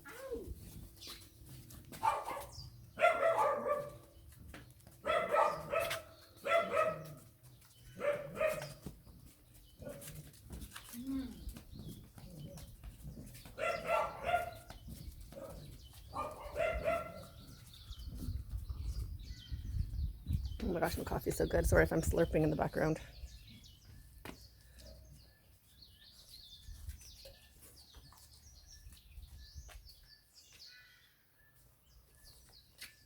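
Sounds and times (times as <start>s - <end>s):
dog barking: 2.0s - 4.0s, 5.0s - 7.2s, 8.0s - 8.8s, 13.6s - 14.6s, 15.4s - 17.4s.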